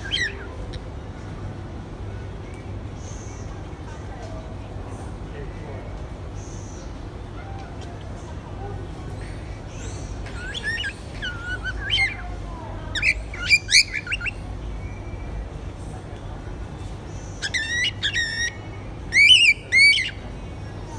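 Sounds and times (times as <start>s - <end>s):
budgerigar chirping: 0.0s - 0.6s, 9.7s - 12.3s, 12.9s - 14.4s, 17.4s - 20.2s.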